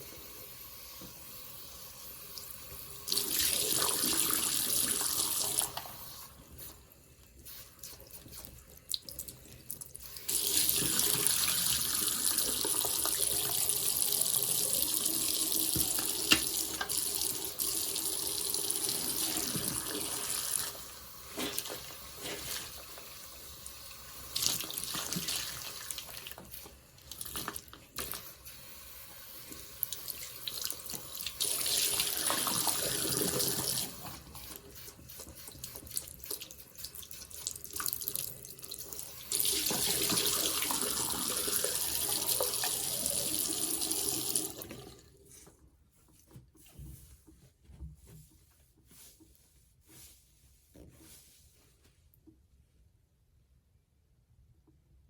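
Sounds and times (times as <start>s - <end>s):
tap water running into sink: 8.9s - 28.4s, 29.4s - 45.1s.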